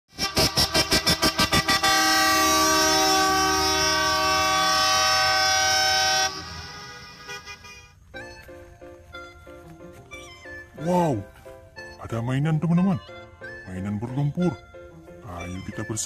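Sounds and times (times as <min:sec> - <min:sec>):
long multi-note horn chord: 0:00.1 - 0:08.0
horn toots: 0:00.1 - 0:08.4
faint musical tones: 0:02.4 - 0:16.0.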